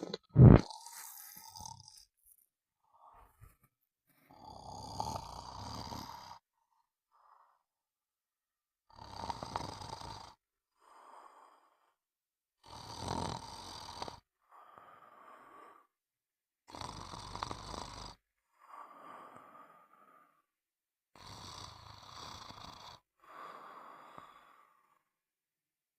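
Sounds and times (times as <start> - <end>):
loud snoring: 0.0 - 2.0, 4.3 - 6.4, 8.9 - 11.5, 12.6 - 14.3, 16.7 - 18.2, 21.2 - 24.8
breathy breathing: 14.4 - 15.9, 23.2 - 25.1.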